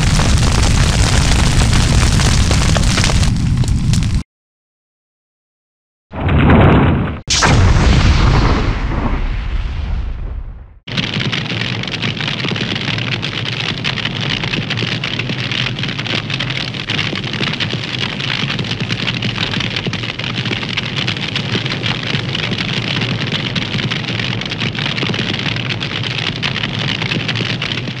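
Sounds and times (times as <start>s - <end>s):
crackling fire hiss: 0.0s - 4.2s, 7.3s - 17.9s.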